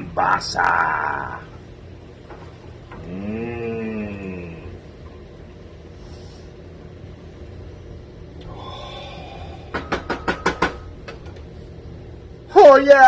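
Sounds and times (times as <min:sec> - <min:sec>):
low steady hum: 0:00.0 - 0:13.0
sharp knocks: 0:09.7 - 0:11.3.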